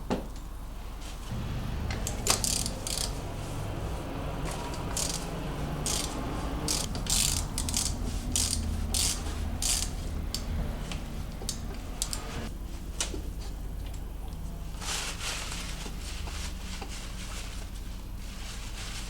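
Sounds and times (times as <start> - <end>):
ratchet wrench clicking: 2.0 - 3.2, 4.9 - 10.5.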